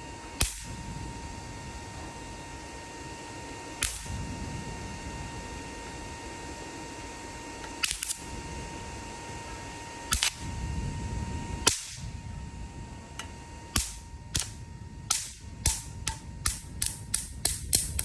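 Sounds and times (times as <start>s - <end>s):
sharp electrical snaps: 0.0s - 2.7s, 3.4s - 6.0s, 7.4s - 8.8s, 10.0s - 10.6s, 11.6s - 12.3s, 13.0s - 18.0s
charger high-pitched whine: 0.0s - 18.0s
charger low hum: 0.0s - 18.0s.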